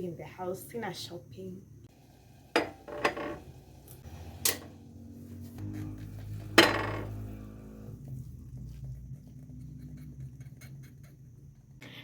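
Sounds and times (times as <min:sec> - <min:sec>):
dishes and utensils clinking: 0:02.6 - 0:03.4.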